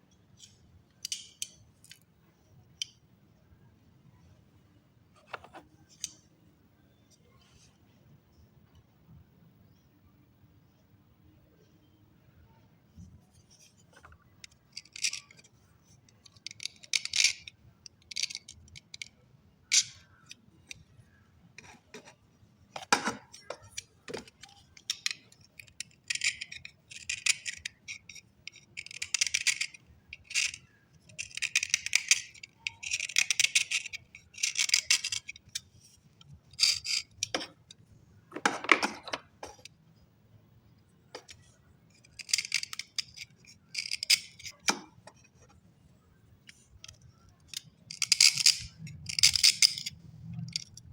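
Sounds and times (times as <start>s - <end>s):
slate pencils clinking and scraping: 13.3s - 39.7s, 41.2s - 45.6s, 46.4s - 50.9s.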